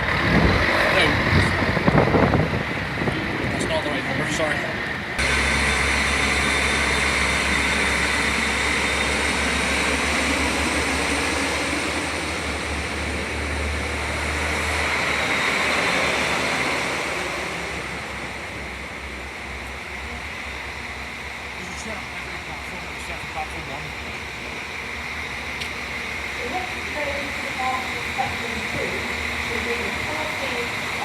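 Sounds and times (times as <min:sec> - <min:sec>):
diesel train engine hum: 0:00.0 - 0:31.0
faint high whine: 0:05.2 - 0:14.3.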